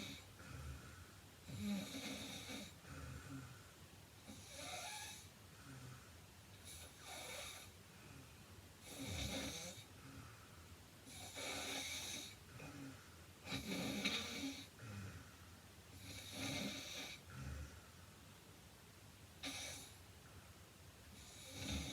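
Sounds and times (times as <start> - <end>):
woman snoring: 0.0 - 3.5, 4.3 - 5.9, 8.8 - 9.9, 11.1 - 15.2, 16.0 - 17.8, 21.1 - 21.9.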